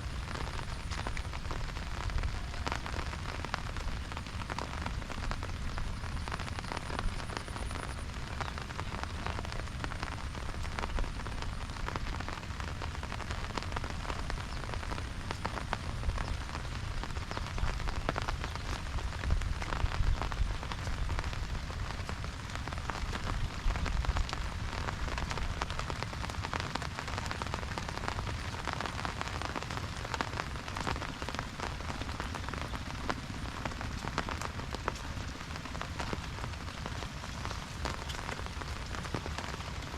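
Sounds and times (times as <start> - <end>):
rain tapping on umbrella: 0.0 - 39.9.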